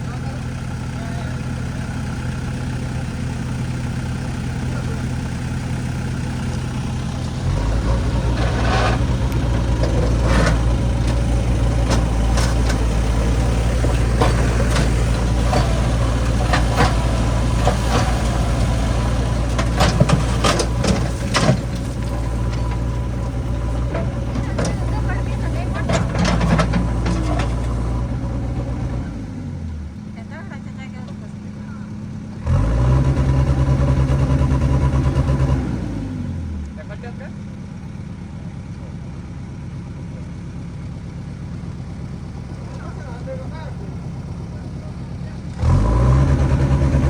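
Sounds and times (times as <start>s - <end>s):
diesel engine idling: 0.0s - 47.0s
knocks and clatters: 7.2s - 28.0s.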